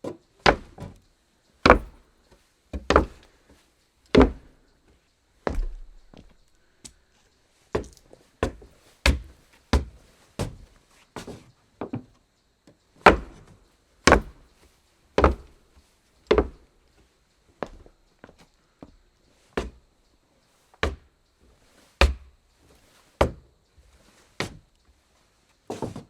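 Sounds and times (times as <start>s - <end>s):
footsteps on wooden floor: 1.7s - 2.0s, 2.8s - 3.3s, 4.2s - 4.6s, 5.4s - 7.0s, 7.7s - 12.0s, 14.1s - 14.4s, 15.2s - 15.6s, 16.3s - 16.6s.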